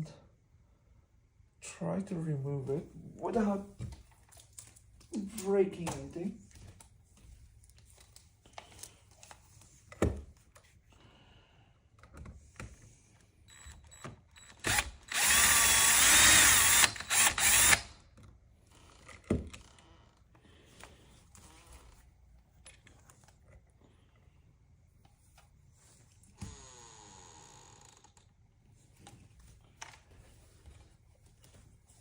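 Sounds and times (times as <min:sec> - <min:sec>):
power drill running: 0:14.4 - 0:18.0.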